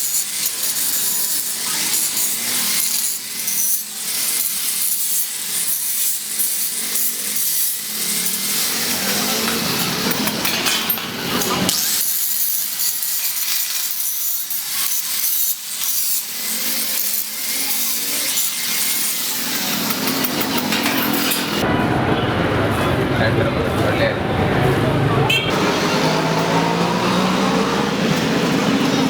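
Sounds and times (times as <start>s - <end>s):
tool scraping iron: 0.0s - 21.6s.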